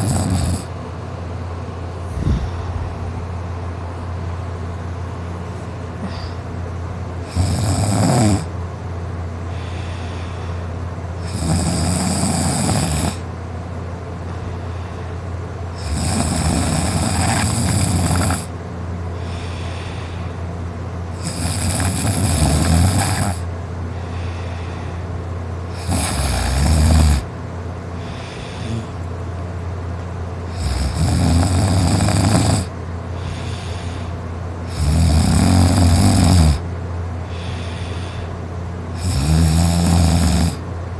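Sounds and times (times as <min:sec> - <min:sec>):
man snoring loudly: 0:00.0 - 0:00.8, 0:07.2 - 0:08.5, 0:11.2 - 0:13.3, 0:15.7 - 0:18.5, 0:21.1 - 0:23.5, 0:25.7 - 0:27.3, 0:28.0 - 0:29.0, 0:30.5 - 0:36.7, 0:38.9 - 0:40.6
steady low hum: 0:00.0 - 0:40.9
faint breaths: 0:01.8 - 0:04.8, 0:05.4 - 0:06.6, 0:09.4 - 0:11.0, 0:14.2 - 0:15.5, 0:19.0 - 0:20.7, 0:23.1 - 0:26.2, 0:27.8 - 0:29.2, 0:33.1 - 0:34.5, 0:37.2 - 0:38.9.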